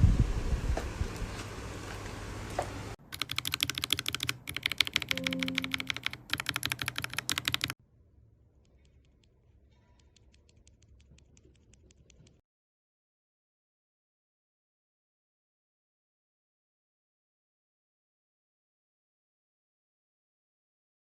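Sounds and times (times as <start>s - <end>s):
typing on mechanical keyboard: 3.0s - 7.8s.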